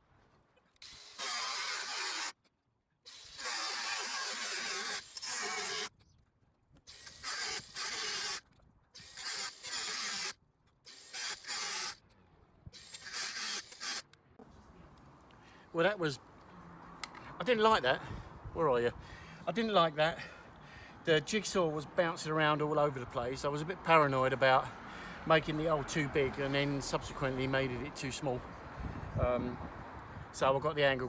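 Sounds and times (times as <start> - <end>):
jigsaw cutting sheet metal: 0.8 - 2.4, 3.1 - 6.0, 6.9 - 8.4, 9.0 - 12.0, 12.8 - 14.0.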